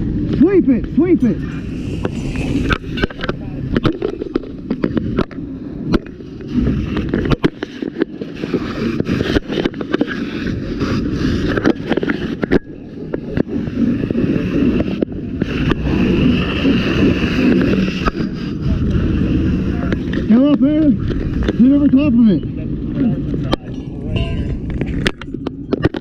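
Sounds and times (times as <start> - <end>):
fire hose stream rushing: 1.0 - 4.8.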